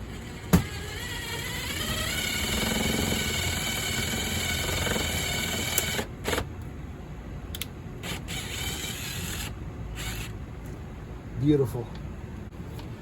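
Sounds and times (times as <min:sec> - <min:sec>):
power drill driving a screw: 0:00.1 - 0:06.4, 0:08.0 - 0:10.3.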